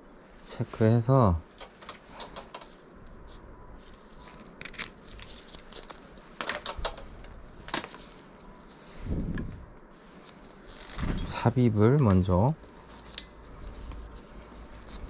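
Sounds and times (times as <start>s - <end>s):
crinkling and rustling material: 0.5s - 15.0s.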